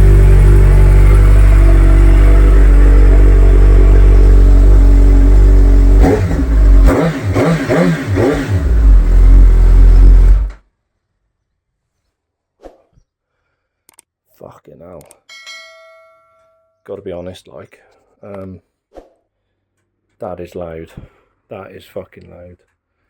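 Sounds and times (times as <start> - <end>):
motorcycle engine idling and revving: 0.0 - 10.6.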